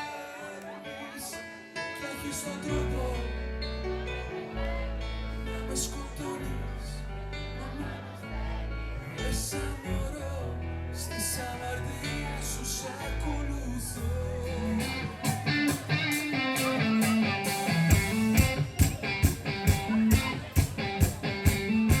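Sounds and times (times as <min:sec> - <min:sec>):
person singing: 0:00.0 - 0:22.0
song with guitar and bass: 0:01.9 - 0:22.0.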